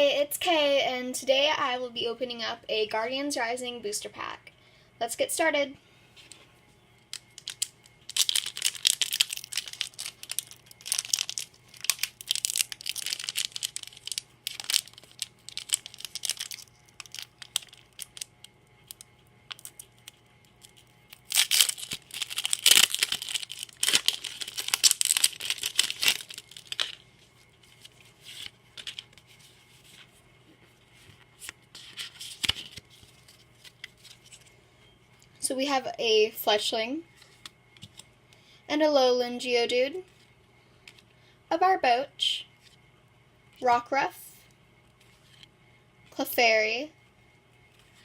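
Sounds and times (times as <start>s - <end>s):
foil wrapper crinkling and tearing: 7.1s - 29.4s, 31.8s - 34.5s.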